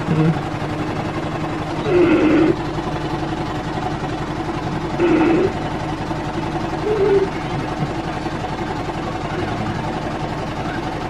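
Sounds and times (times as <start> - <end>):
mechanical drone of air pulse generator: 0.0 - 11.0.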